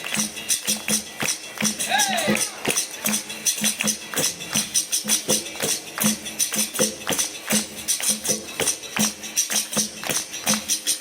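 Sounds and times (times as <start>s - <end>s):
drum beats: 0.0s - 11.0s.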